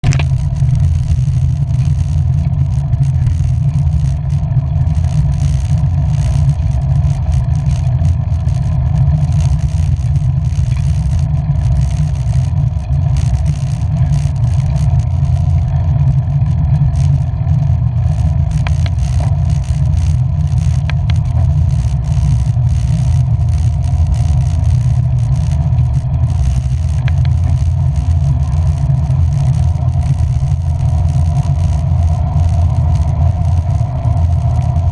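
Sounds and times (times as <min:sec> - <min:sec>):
engine and road rumble: 0:00.0 - 0:34.9
light ticks: 0:18.1 - 0:34.9.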